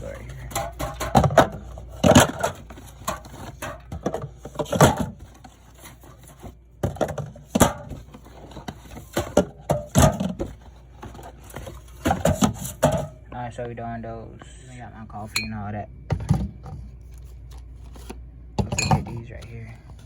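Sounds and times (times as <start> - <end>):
soda cans knocking and clunking: 0.1 - 5.5, 6.8 - 13.2.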